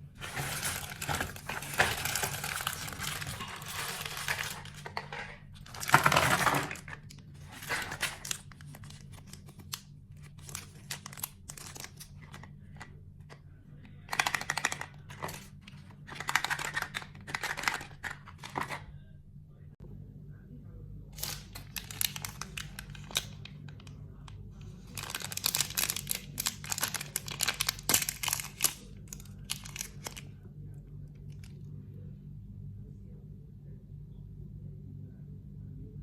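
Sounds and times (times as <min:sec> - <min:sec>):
steady low hum: 0:00.0 - 0:36.0
packaging crinkling and tearing: 0:00.2 - 0:12.8, 0:14.1 - 0:18.8, 0:21.2 - 0:23.9, 0:24.9 - 0:30.3.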